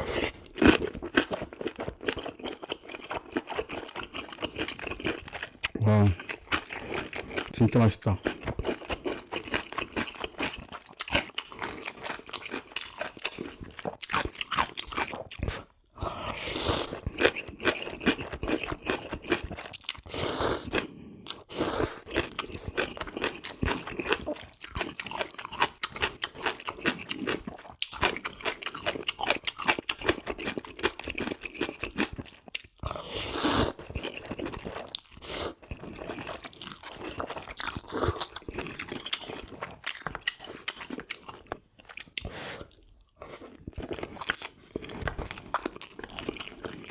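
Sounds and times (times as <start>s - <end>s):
slurping noodles: 0.0s - 0.6s, 15.4s - 17.1s, 20.0s - 24.4s, 32.9s - 34.2s, 35.1s - 36.2s
chewing and crunchy bites: 0.0s - 46.9s.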